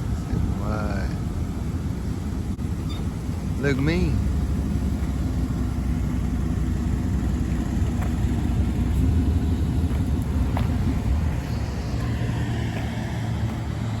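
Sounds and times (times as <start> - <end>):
truck engine running: 0.0 - 14.0.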